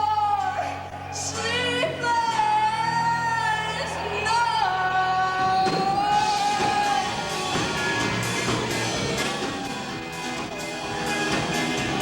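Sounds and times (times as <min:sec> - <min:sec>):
drums: 0:04.5 - 0:12.0
live band playing: 0:05.3 - 0:12.0.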